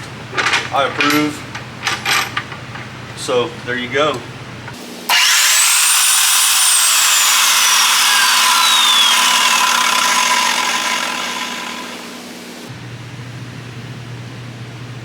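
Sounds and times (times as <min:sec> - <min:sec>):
chop saw motor whining: 0:05.1 - 0:12.7.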